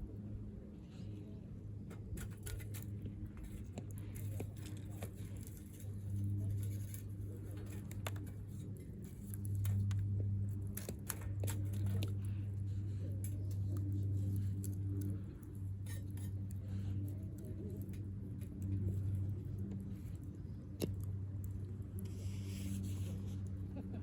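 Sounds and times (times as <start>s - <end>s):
low steady rumble: 0.0s - 24.0s
wood fire crackling: 2.0s - 23.6s.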